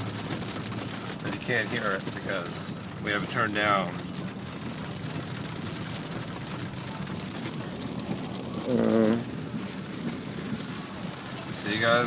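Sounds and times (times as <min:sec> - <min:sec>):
heavy rain on a car: 0:00.0 - 0:12.0.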